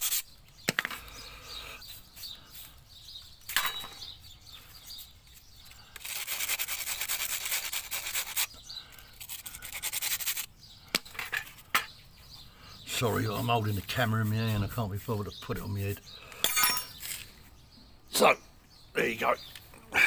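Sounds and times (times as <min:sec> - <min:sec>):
faint bird chirps: 0:00.0 - 0:06.0, 0:08.4 - 0:09.8
scraping strokes on brick: 0:13.0 - 0:16.0.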